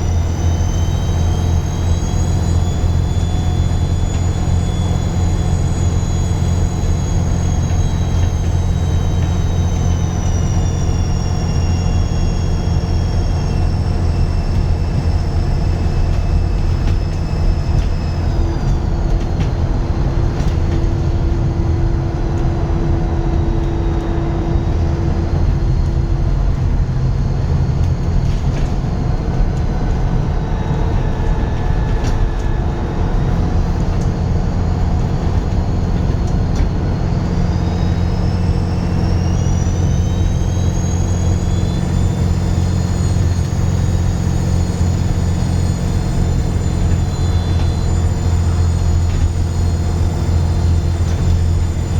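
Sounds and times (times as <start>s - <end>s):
turbo whistle: 0.0s - 19.4s, 30.4s - 51.9s
bus engine running: 0.0s - 51.9s.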